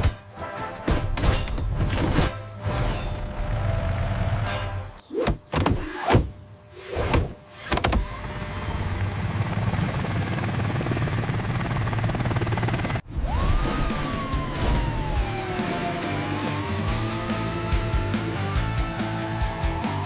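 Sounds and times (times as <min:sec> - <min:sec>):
motor-like whirr: 0:02.9 - 0:11.1
rising and falling glide: 0:13.1 - 0:18.4.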